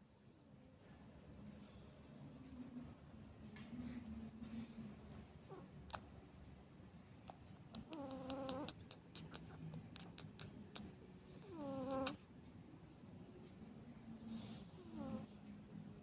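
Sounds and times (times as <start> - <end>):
cat snoring: 5.5 - 6.0, 7.7 - 12.2, 14.2 - 15.4.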